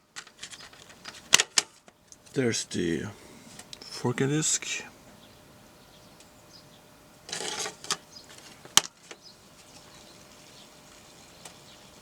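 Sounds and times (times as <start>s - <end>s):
disc case scraping: 7.3s - 8.8s.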